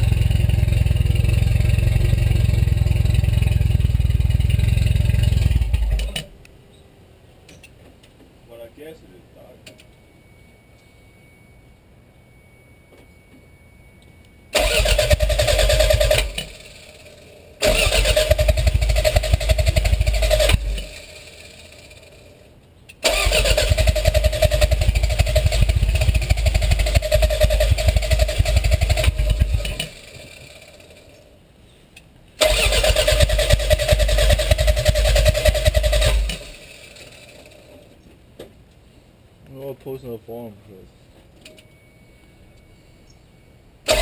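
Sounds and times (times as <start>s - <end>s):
engine cranking by starter motor: 0.0s - 6.4s, 14.5s - 22.4s, 23.0s - 31.2s, 32.4s - 37.9s.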